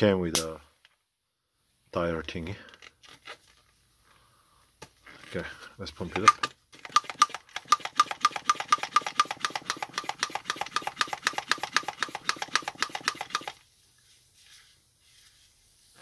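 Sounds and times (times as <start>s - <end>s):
air pump inflating tube: 6.8s - 16.0s.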